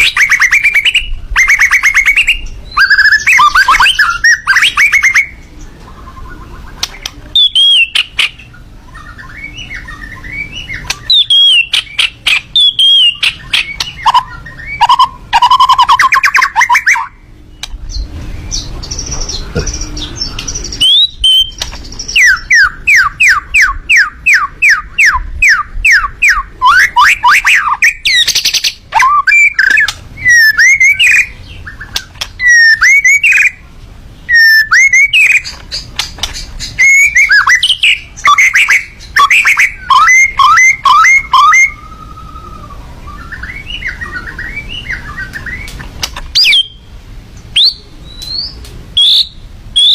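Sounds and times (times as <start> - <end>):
songbird singing whistles: 0.0 - 33.6, 34.2 - 49.9
harsh clicking bird notes: 6.6 - 33.6, 34.3 - 41.8, 43.3 - 46.8.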